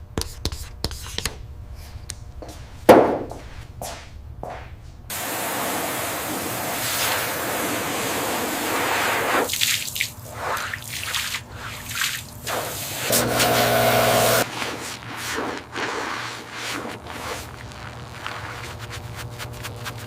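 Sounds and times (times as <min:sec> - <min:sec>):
water spraying: 0:05.1 - 0:14.4
water dripping and splashing: 0:09.5 - 0:12.9
steady hum: 0:12.3 - 0:14.5.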